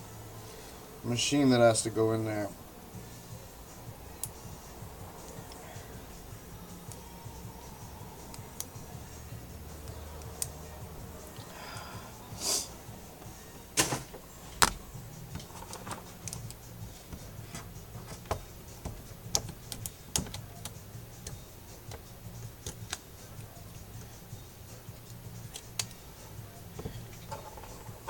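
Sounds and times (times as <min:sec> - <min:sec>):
brief hiss: 0:12.4 - 0:12.7
tools and phone parts clicking: 0:13.8 - 0:24.1, 0:25.0 - 0:26.0, 0:26.6 - 0:28.0.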